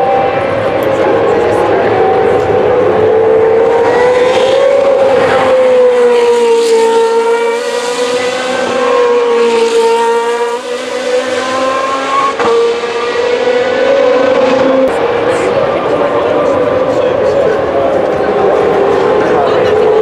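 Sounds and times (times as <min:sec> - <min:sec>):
race car engine high pitch: 0:00.0 - 0:20.0.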